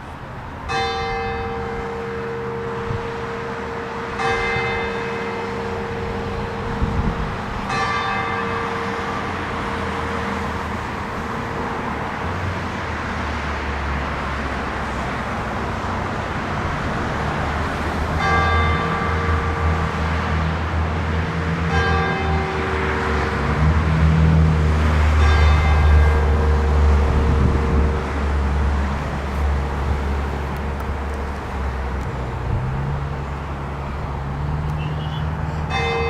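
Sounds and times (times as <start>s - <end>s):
low traffic rumble: 0.0s - 36.0s
church bell struck by hammer: 0.7s - 11.5s, 18.2s - 28.8s, 35.7s - 36.0s.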